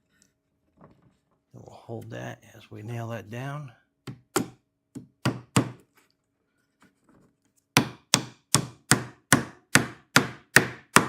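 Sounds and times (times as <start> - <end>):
hammer tapping nail into wood: 4.1 - 5.8, 7.8 - 11.0.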